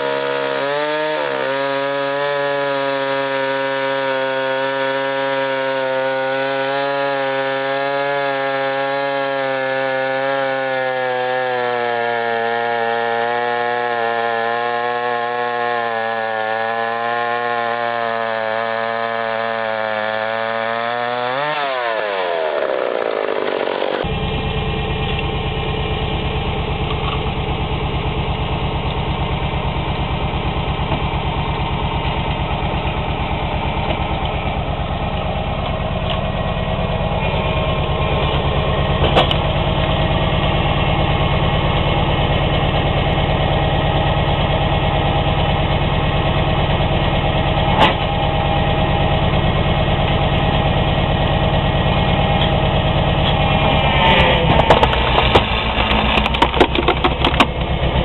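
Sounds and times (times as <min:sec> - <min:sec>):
engine idling: 0:22.5 - 0:58.0.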